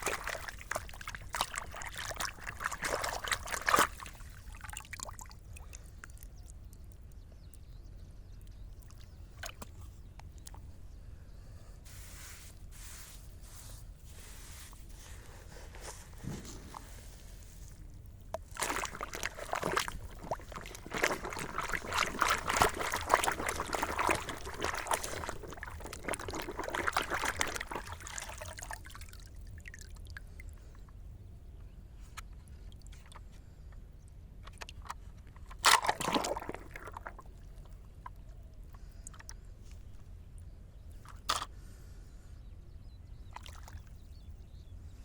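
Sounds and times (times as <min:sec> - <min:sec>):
water splashing: 0:00.0 - 0:05.7, 0:16.2 - 0:30.0, 0:35.6 - 0:37.8
water sloshing and trickling: 0:00.0 - 0:07.3, 0:08.4 - 0:10.8, 0:11.9 - 0:31.2, 0:32.1 - 0:33.4, 0:34.0 - 0:41.5, 0:43.2 - 0:44.2.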